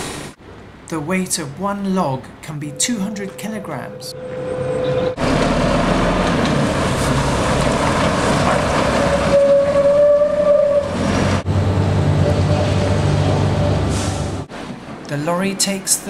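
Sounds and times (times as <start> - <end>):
high whine: 2.4 - 5.2
heavy machinery rumbling: 2.7 - 15.0.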